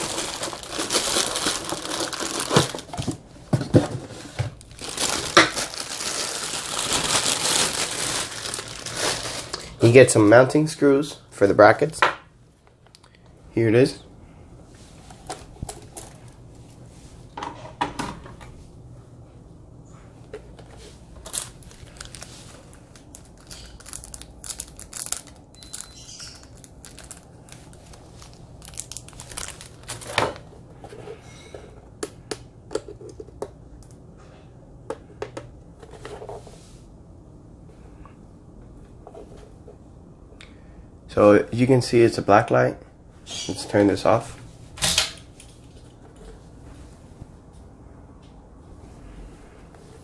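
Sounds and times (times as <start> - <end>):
plastic packaging crinkling and tearing: 0.0 - 3.2, 4.5 - 9.9, 21.2 - 30.4.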